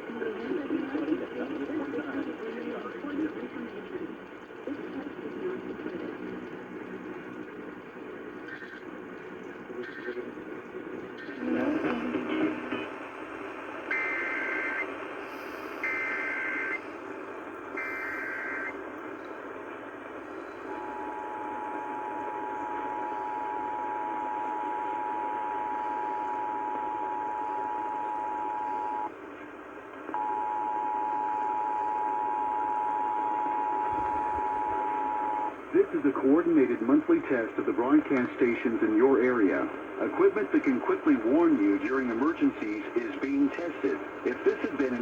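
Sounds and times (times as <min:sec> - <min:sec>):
radio hiss: 0:00.0 - 0:45.0
two-tone attention signal: 0:17.8 - 0:18.7.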